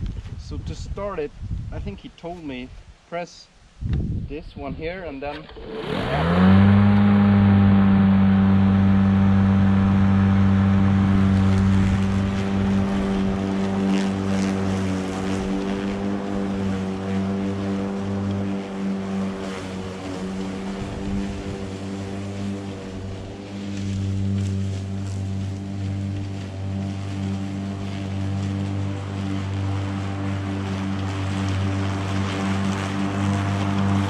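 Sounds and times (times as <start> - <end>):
lawnmower motor humming: 5.3 - 34.0.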